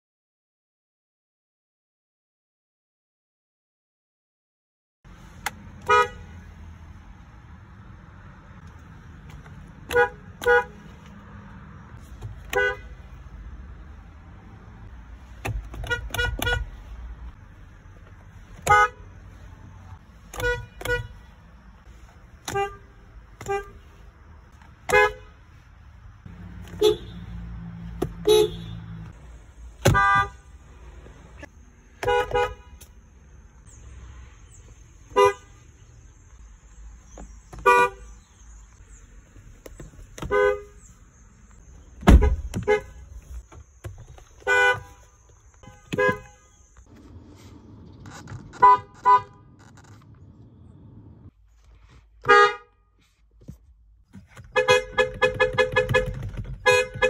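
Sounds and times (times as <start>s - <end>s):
car horn honks: 5.4s - 6.5s, 9.8s - 11.0s, 12.3s - 13.2s, 15.4s - 16.9s, 18.6s - 19.1s, 20.2s - 21.3s, 22.4s - 24.0s, 24.8s - 25.4s, 26.4s - 29.2s, 29.8s - 30.5s, 32.0s - 32.9s, 35.1s - 35.6s, 37.6s - 38.2s, 40.2s - 40.9s, 42.0s - 43.2s, 44.4s - 46.7s, 48.2s - 49.7s, 52.2s - 52.9s, 54.4s - 57.0s.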